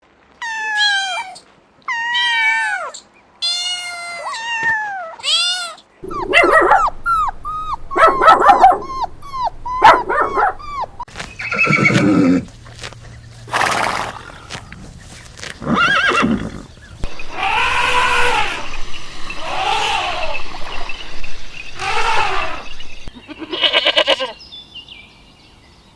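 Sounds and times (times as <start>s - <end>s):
farm animals calling: 6.0s - 12.5s, 13.5s - 14.9s, 15.6s - 24.4s.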